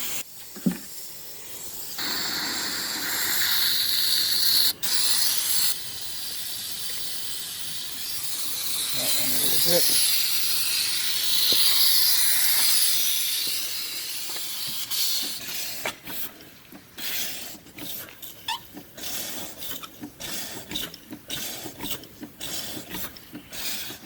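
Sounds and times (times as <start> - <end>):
steam engine hissing and puffing: 0.0 - 24.0.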